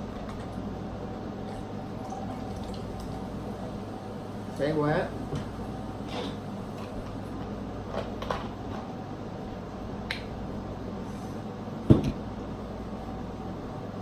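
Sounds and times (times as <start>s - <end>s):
heavy thump: 11.9s - 12.2s.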